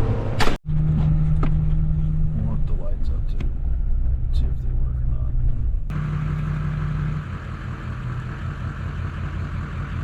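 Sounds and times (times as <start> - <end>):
farm machine engine running: 5.9 - 10.0.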